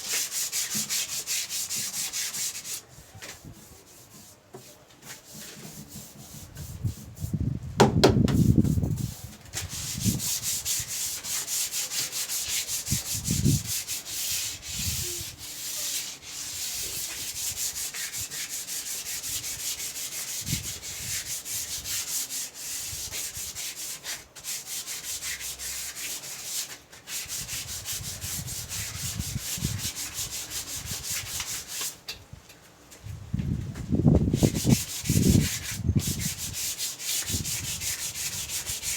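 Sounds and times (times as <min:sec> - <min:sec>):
sandpaper scraping wood: 0:00.0 - 0:07.4, 0:08.2 - 0:32.0, 0:34.0 - 0:38.9
dull knocks: 0:07.8 - 0:08.5.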